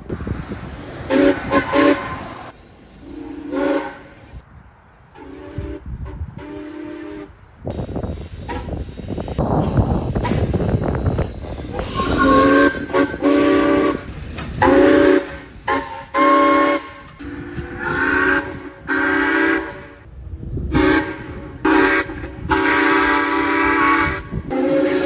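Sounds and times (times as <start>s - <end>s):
train chime horn blasts: 11.8s - 20.0s, 20.7s - 25.0s.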